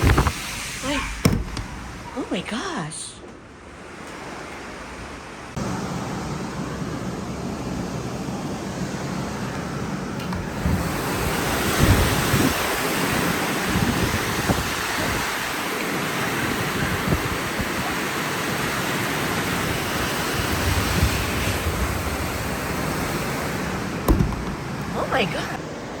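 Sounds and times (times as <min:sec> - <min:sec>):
strong gusting wind: 0:10.4 - 0:25.9
wind buffeting microphone: 0:10.5 - 0:15.5.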